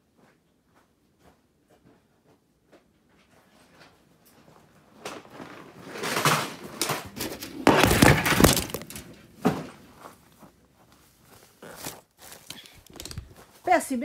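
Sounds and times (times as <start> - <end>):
camera tumbling among firewood: 5.2 - 14.0.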